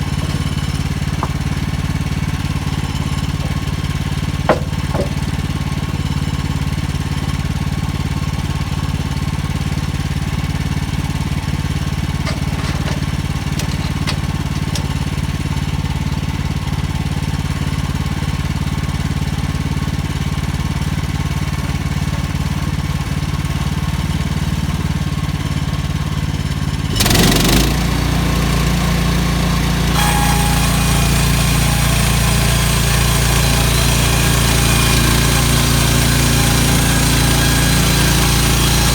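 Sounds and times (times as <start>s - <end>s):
band saw blade whine: 0.0s - 6.4s, 11.6s - 15.9s, 27.0s - 38.9s
sawmill gas engine running: 0.0s - 38.9s.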